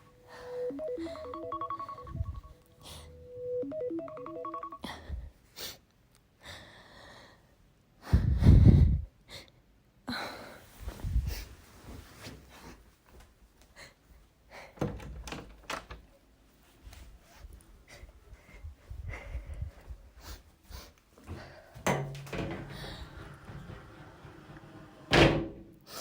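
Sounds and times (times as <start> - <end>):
alarm ringtone beeping tune: 0.0 - 4.9.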